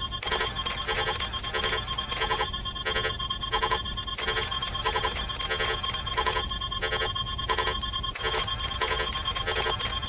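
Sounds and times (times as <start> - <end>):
electronic beeps: 0.0 - 10.0.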